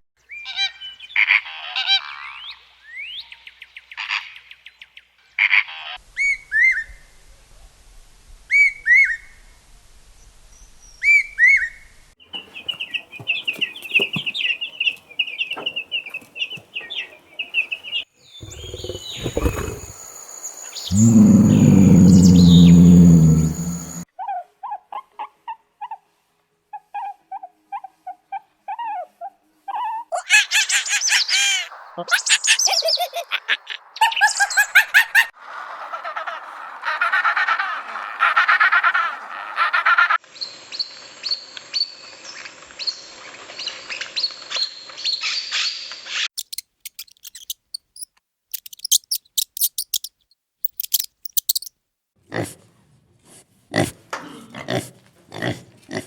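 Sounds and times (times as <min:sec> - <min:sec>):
animal chirps: 0:18.4 - 0:20.0, 0:20.8 - 0:24.0, 0:46.4 - 0:51.7
chirping trills and whistles: 0:20.6 - 0:24.0, 0:46.4 - 0:50.1, 0:50.7 - 0:51.7
quick high clicks: 0:46.4 - 0:51.7.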